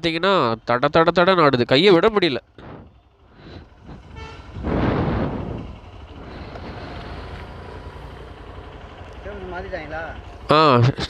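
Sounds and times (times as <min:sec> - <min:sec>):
low traffic rumble: 0:00.0 - 0:11.0
vehicle passing close: 0:02.6 - 0:10.5
vehicle horn toot: 0:04.0 - 0:04.6.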